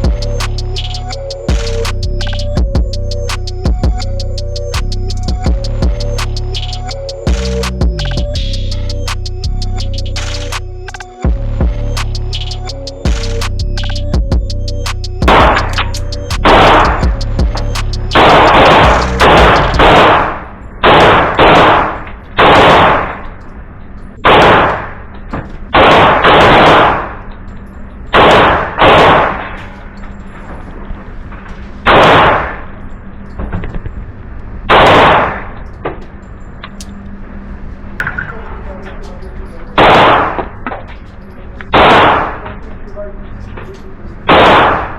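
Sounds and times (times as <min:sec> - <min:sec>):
pistol shots echoing: 0:19.8 - 0:23.3, 0:25.7 - 0:27.2, 0:28.2 - 0:29.6, 0:39.8 - 0:40.6, 0:41.7 - 0:42.6, 0:44.3 - 0:44.9.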